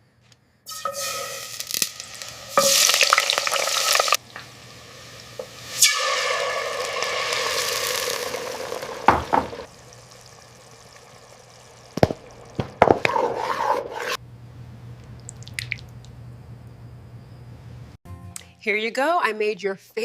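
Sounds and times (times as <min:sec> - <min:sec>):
food sizzling in frying pan: 0:00.7 - 0:14.2
stirring liquid noise: 0:09.0 - 0:14.2.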